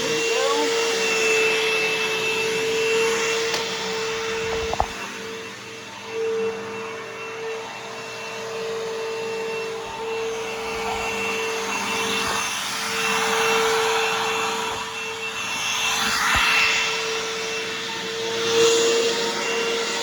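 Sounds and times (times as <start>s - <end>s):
vacuum cleaner motor whine: 0.0s - 20.0s.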